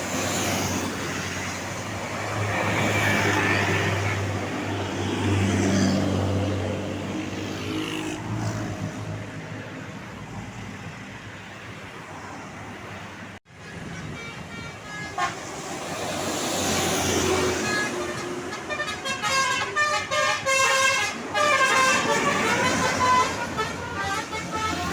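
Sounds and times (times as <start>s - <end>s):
bus engine hum: 0.0s - 24.9s
multi-tone bus horn tune: 13.6s - 24.9s.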